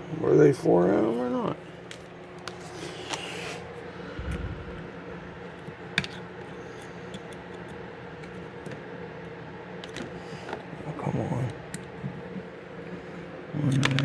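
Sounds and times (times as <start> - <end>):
steady low hum: 3.6 - 9.8.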